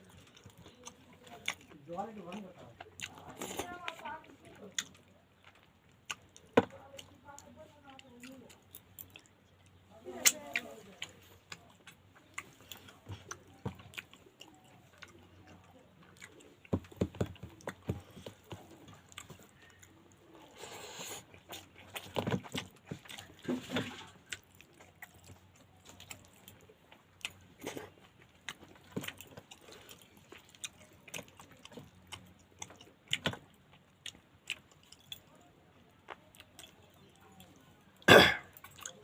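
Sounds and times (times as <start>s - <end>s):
person chewing food: 0.0s - 39.0s.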